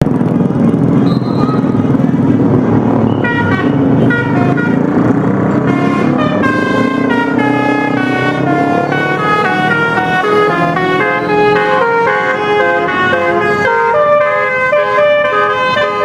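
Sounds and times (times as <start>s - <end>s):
musical air horn melody: 3.2s - 4.9s, 5.6s - 16.0s.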